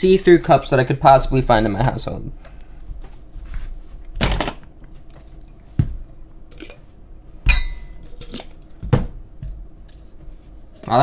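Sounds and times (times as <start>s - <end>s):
cups knocking and clinking: 7.5s - 8.2s.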